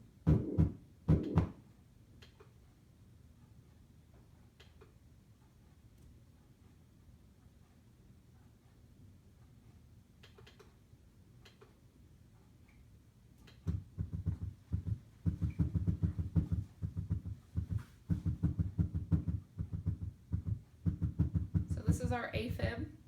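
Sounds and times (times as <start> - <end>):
fast irregular heart thumping: 0.3 - 1.6, 13.7 - 22.7.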